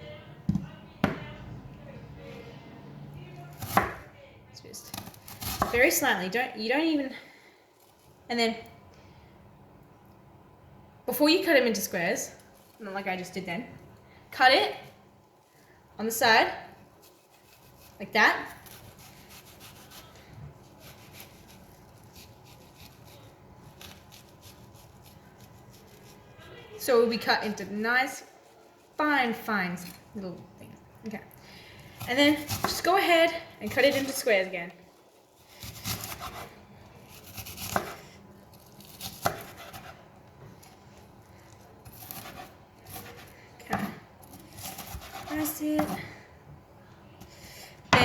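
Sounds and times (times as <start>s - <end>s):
knife slicing onion on board: 17.0s - 26.2s, 32.0s - 33.0s, 33.6s - 34.3s, 35.5s - 40.1s, 41.8s - 46.1s.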